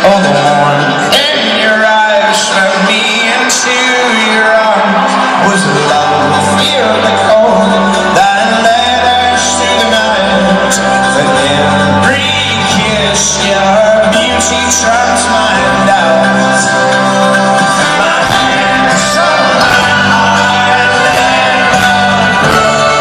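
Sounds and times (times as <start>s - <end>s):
folk-rock band playing live: 0.0s - 23.0s
man singing: 0.0s - 23.0s.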